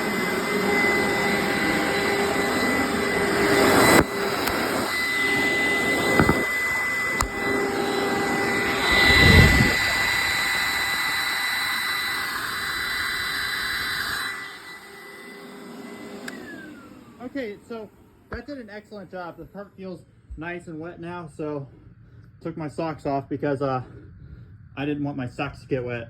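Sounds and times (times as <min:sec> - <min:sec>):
motor winding down: 0:00.0 - 0:19.8
carpet cleaner motor whining: 0:00.0 - 0:20.4.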